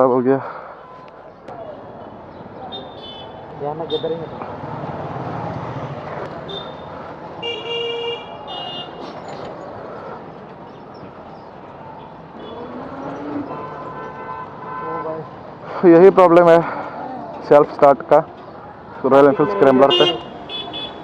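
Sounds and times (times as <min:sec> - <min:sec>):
road traffic passing: 0:00.0 - 0:21.0
vehicle horn honking: 0:02.7 - 0:04.3, 0:06.5 - 0:09.0, 0:13.4 - 0:15.3, 0:19.2 - 0:21.0.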